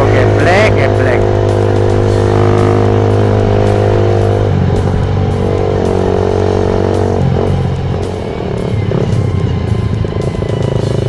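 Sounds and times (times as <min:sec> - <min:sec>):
background music sustained chords: 0:00.0 - 0:11.0
motorcycle engine running: 0:00.0 - 0:11.0.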